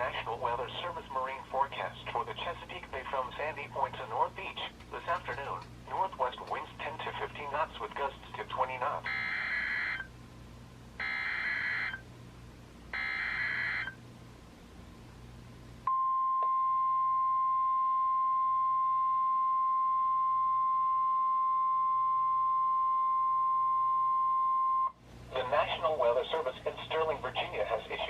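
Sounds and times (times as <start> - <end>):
steady warning alarm tone: 9.1 - 10.1, 11.0 - 12.0, 13.0 - 14.0.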